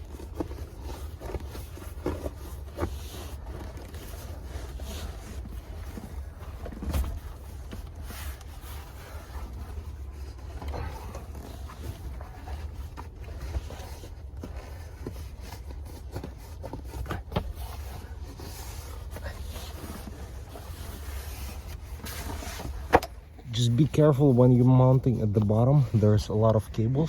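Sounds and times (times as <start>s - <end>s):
leather rustling and clips clicking: 0.0s - 23.4s
steady low rumble: 22.7s - 27.0s.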